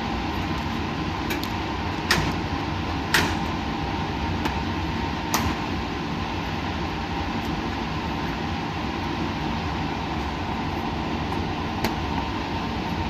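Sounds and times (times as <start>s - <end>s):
equipment and ventilation hum: 0.0s - 13.0s.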